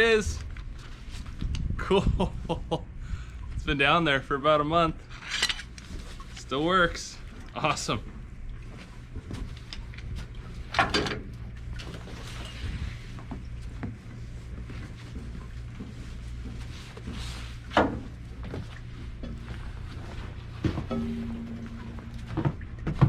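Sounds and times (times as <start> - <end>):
steady low hum: 7.1 - 23.0
metal clanks and knocks: 10.8 - 12.7, 19.2 - 23.0.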